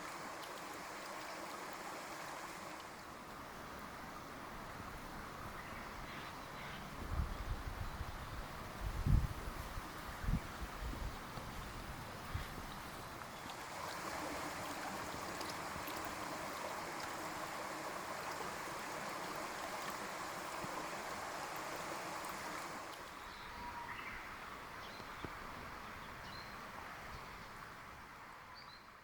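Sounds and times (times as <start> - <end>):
waterfall rushing: 13.6 - 22.9.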